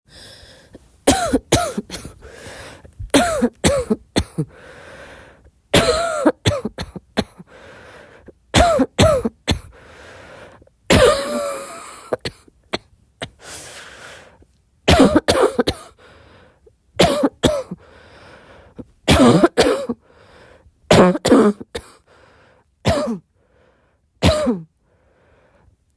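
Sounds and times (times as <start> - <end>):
woman coughing: 1.1 - 2.2, 3.1 - 4.5, 5.8 - 7.5, 8.6 - 9.7, 10.9 - 13.4, 14.9 - 15.9, 17.0 - 17.8, 19.1 - 20.0, 20.9 - 22.0, 22.9 - 23.2, 24.2 - 24.7.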